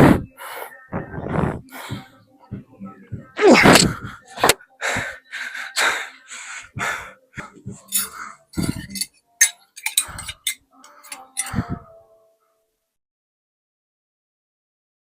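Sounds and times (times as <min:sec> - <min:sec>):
person breathing hard: 0:00.0 - 0:02.1, 0:03.4 - 0:08.9.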